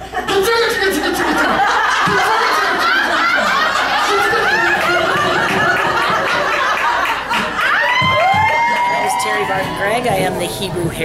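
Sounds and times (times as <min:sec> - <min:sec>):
audience laughing: 0:00.0 - 0:08.0.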